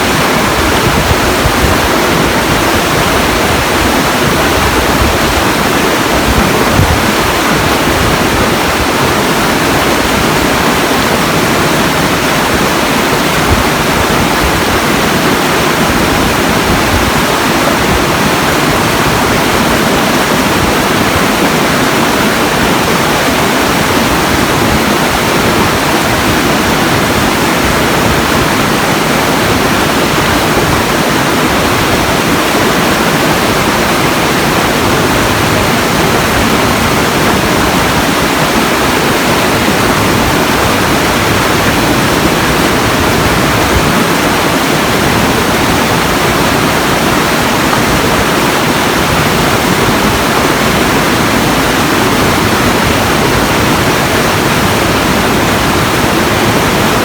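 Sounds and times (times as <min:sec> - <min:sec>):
rushing water roar: 0:00.0 - 0:57.0.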